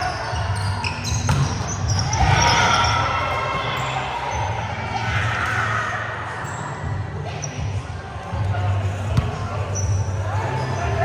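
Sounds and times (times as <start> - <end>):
sneakers squeaking on court: 0.0 - 3.9, 9.0 - 11.0
players' voices echoing: 0.0 - 11.0.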